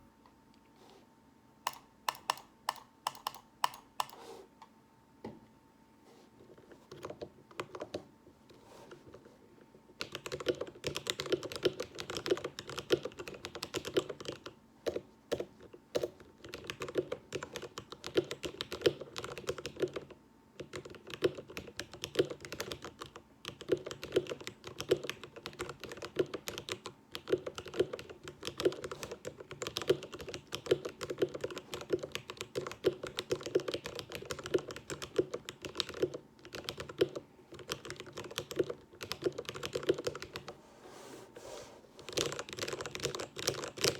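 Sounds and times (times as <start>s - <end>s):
keyboard key clicks: 1.6s - 4.2s.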